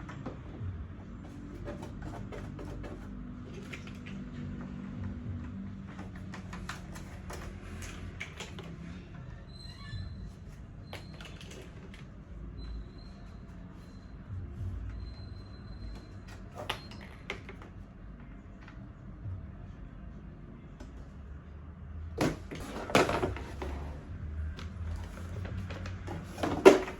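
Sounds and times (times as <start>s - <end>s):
plastic parts clicking and knocking: 10.9s - 12.1s, 16.4s - 17.8s, 24.6s - 26.9s.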